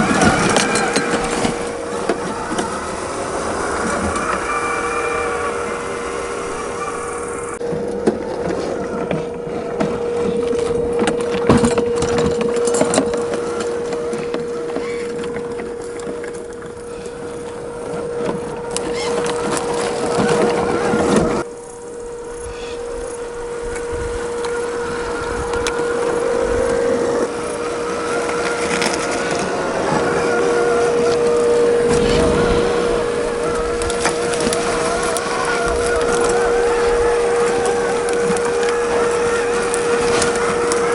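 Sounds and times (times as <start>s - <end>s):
electric motor whining: 0.0s - 40.9s
tyres crunching over rough ground: 23.6s - 40.9s.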